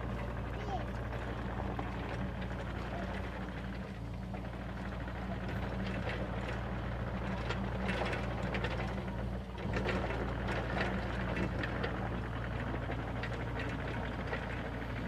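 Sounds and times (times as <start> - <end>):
diesel engine running: 0.0 - 15.0.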